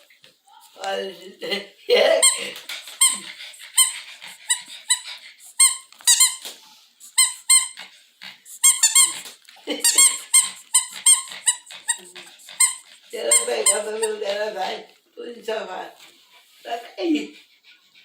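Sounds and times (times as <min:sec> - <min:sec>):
squeaky toy ball squeaking: 0:03.8 - 0:06.4, 0:07.2 - 0:07.8, 0:08.5 - 0:09.2, 0:09.8 - 0:14.2.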